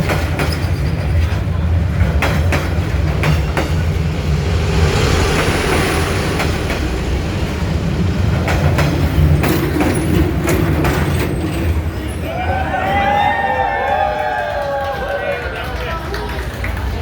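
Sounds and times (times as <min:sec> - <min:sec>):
train rumbling past: 0:00.0 - 0:17.0
train hiss: 0:03.8 - 0:10.4
wheels clicking over rail joints: 0:08.3 - 0:13.0.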